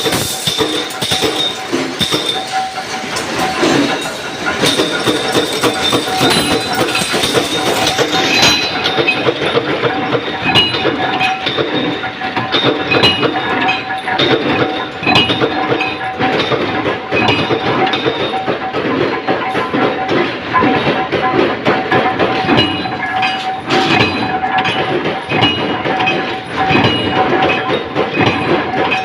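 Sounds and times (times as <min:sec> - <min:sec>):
power press clattering: 0:00.0 - 0:29.0
steady machine whine: 0:00.0 - 0:29.0.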